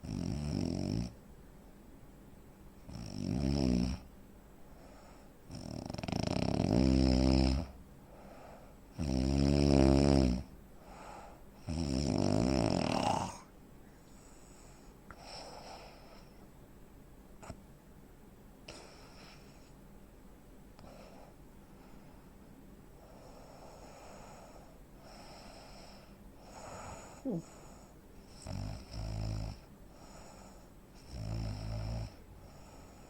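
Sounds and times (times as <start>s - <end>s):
man snoring heavily: 0.0s - 1.2s, 2.9s - 4.0s, 5.5s - 7.8s, 9.0s - 10.5s, 11.6s - 13.5s, 28.4s - 33.0s
faint breathing: 4.7s - 5.4s, 8.0s - 8.9s, 10.8s - 11.7s, 13.3s - 16.5s, 18.7s - 19.8s, 20.8s - 28.8s, 29.6s - 31.1s, 32.1s - 33.0s.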